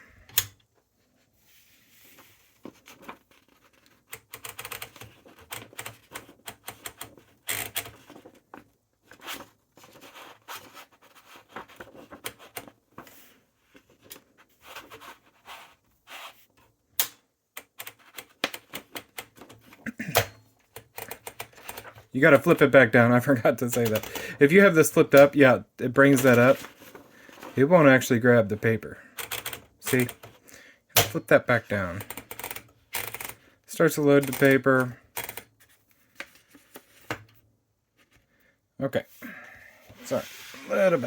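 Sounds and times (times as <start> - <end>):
typewriter clicking and rattling: 3.7 - 8.1, 17.0 - 22.0, 29.2 - 30.3, 32.0 - 33.4, 34.2 - 35.5.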